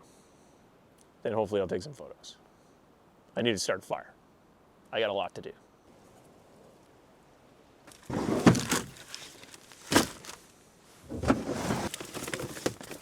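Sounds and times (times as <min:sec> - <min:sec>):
gear being rummaged through: 0:07.9 - 0:10.4, 0:11.1 - 0:13.0.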